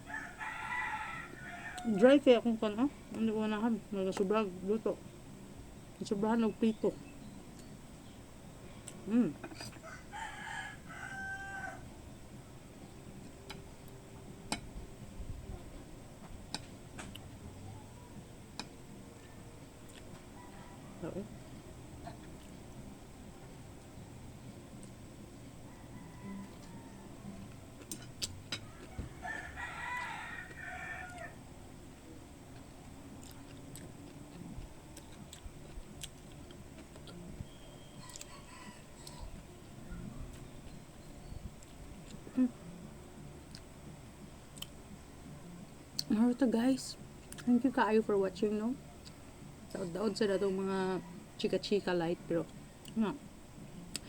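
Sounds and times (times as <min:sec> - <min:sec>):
rooster crowing: 0:00.0 - 0:02.2, 0:09.8 - 0:12.0, 0:20.3 - 0:21.2, 0:25.5 - 0:27.6, 0:28.5 - 0:31.4, 0:37.8 - 0:40.0.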